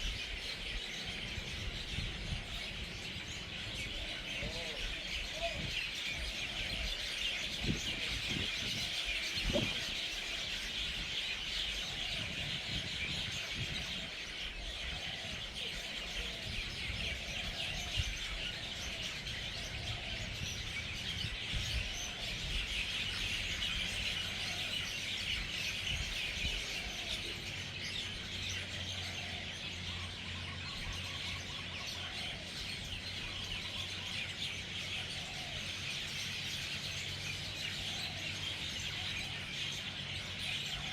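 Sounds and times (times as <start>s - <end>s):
flock of birds chirping: 0.0s - 40.9s.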